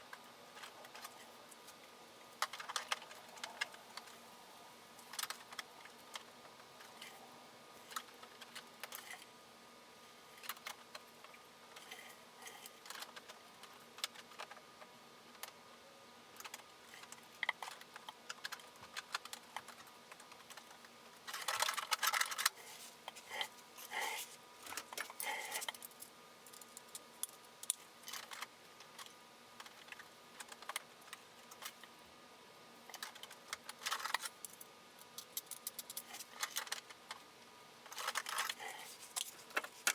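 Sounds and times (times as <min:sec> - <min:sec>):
faint steady hum: 0:00.0 - 0:39.9
small tools clicking and tapping: 0:16.4 - 0:31.9, 0:32.9 - 0:37.2.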